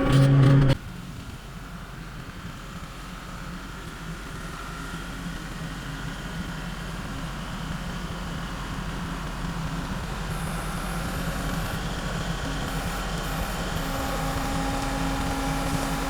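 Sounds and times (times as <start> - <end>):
heavy engine humming: 10.2 - 16.0
steady higher tone: 10.3 - 16.0.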